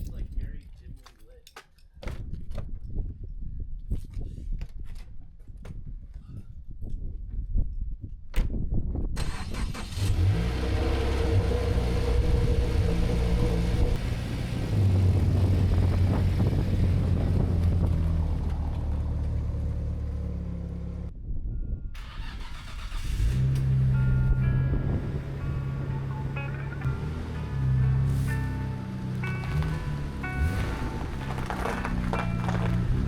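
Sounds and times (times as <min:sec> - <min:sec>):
car engine starting and running: 0:09.2 - 0:21.1, 0:22.0 - 0:33.0.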